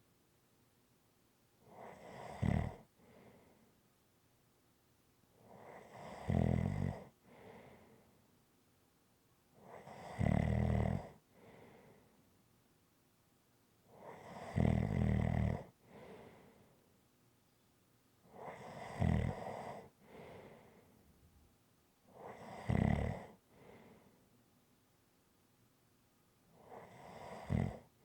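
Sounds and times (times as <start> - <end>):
soft short breath: 7.2 - 8.3, 11.3 - 12.2, 15.8 - 16.8, 20.0 - 21.2, 23.5 - 24.3
person snoring: 22.3 - 23.4, 26.8 - 27.9.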